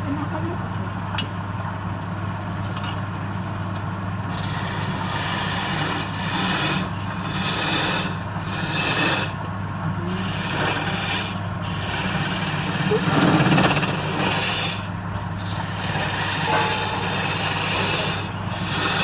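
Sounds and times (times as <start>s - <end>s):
lathe motor humming: 4.3s - 19.0s
tool scraping spinning wood: 4.3s - 19.0s.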